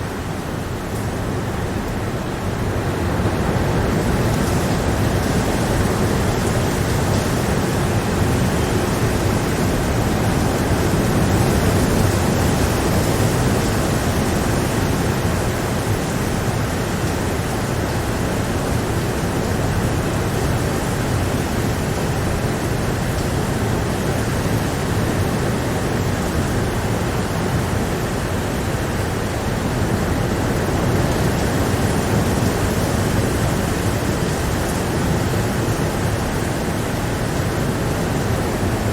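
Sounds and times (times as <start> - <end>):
rain falling steadily: 0.0 - 38.9.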